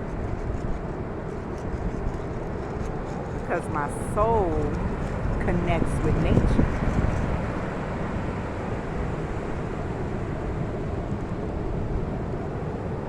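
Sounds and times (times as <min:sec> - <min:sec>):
ocean surf washing: 0:00.0 - 0:13.0
wind on microphone: 0:00.0 - 0:13.0.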